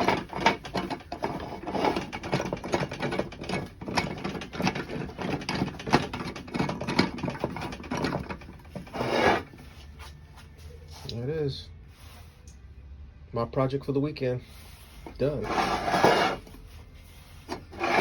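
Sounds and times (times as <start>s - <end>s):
metal vise clicking and rattling: 0.0s - 9.4s
metal scrape: 0.0s - 9.9s, 14.6s - 18.0s.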